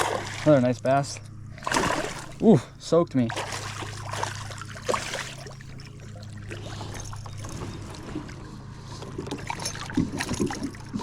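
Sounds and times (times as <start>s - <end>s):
thumps and splashes: 0.0s - 0.5s, 1.6s - 2.4s, 3.3s - 8.0s, 9.2s - 11.0s
water splashing around kayak: 0.0s - 0.7s, 1.5s - 2.6s, 3.2s - 11.0s
steady low hum: 0.0s - 11.0s.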